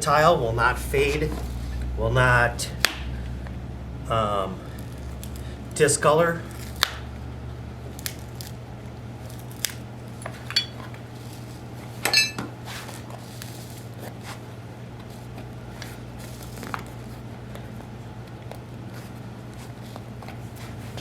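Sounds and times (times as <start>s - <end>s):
steady low hum: 0.0s - 12.6s
hand tools clinking and tapping: 10.5s - 10.8s, 12.1s - 12.5s.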